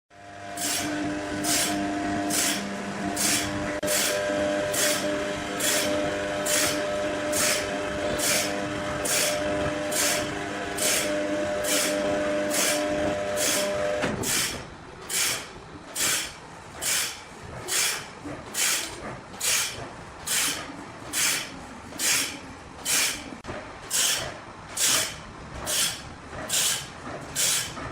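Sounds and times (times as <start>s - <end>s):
machine hum: 0.2s - 27.9s
sawmill hissing cutting strokes: 7.4s - 11.1s, 15.1s - 23.3s, 23.9s - 24.2s, 24.8s - 27.8s.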